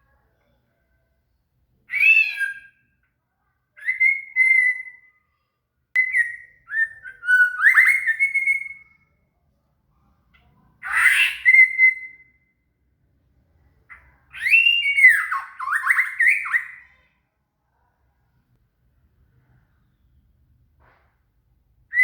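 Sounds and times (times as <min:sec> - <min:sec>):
bird singing whistled phrases: 0:01.9 - 0:02.9, 0:03.8 - 0:05.2, 0:06.0 - 0:09.0, 0:10.9 - 0:12.5, 0:14.3 - 0:17.0.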